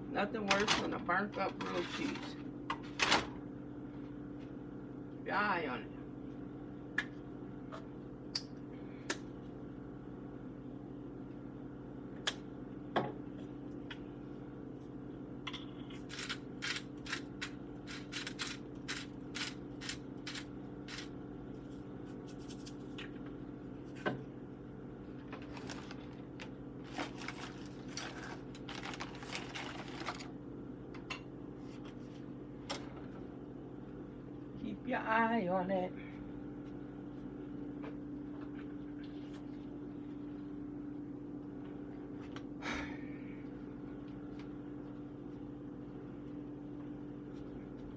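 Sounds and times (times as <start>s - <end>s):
steady hum: 0.0s - 47.9s
sandwich frying with crackles: 25.3s - 30.3s.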